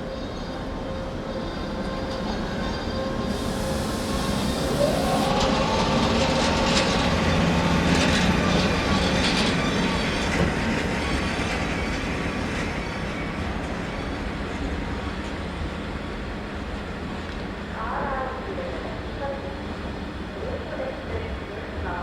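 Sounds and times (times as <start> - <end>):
rising whining tone: 4.0 - 8.6.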